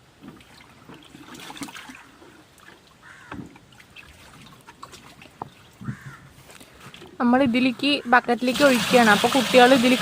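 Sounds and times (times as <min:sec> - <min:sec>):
water splashing and trickling: 0:00.0 - 0:10.0
crow cawing: 0:03.0 - 0:03.4, 0:05.8 - 0:06.3.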